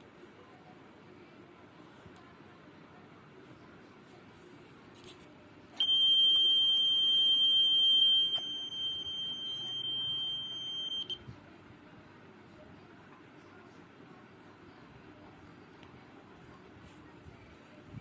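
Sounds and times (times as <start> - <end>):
shrill alarm buzzer: 5.8 - 11.2.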